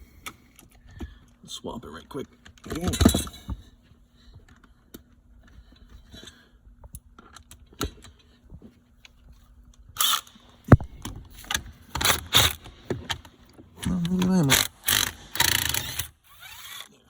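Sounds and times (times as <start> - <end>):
sharp knock: 10.7 - 11.1.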